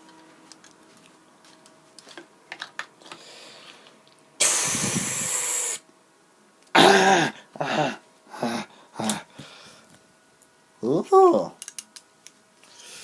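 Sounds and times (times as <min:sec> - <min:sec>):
loud hissing rush: 0:04.4 - 0:05.8
short vocal sound: 0:04.4 - 0:05.8.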